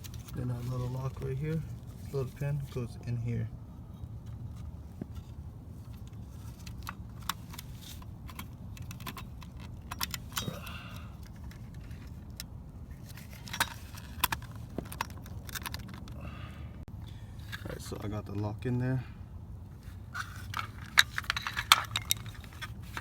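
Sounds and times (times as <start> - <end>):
steady low hum: 0.0 - 23.0
small metal parts clicking: 6.5 - 12.4, 13.1 - 16.2, 20.2 - 23.0.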